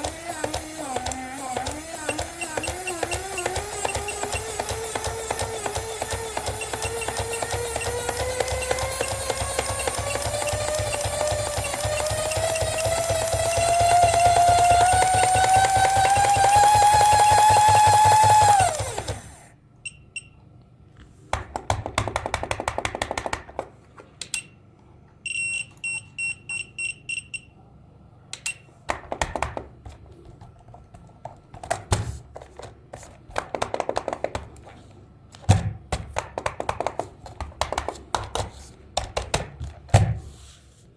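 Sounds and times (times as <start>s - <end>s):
rapid clicking and rattling: 0.0s - 19.4s
electric toy mechanism whining: 0.0s - 19.6s.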